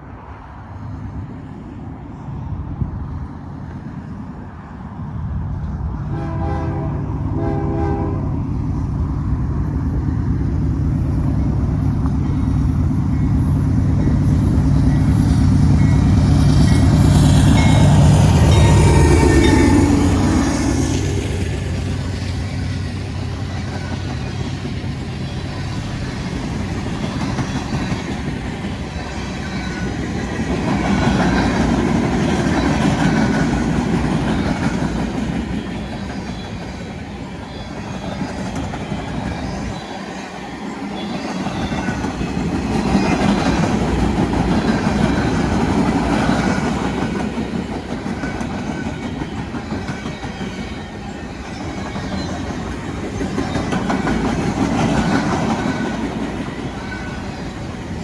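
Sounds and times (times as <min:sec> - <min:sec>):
train wheels clacking over rail joints: 0:41.0 - 0:58.0.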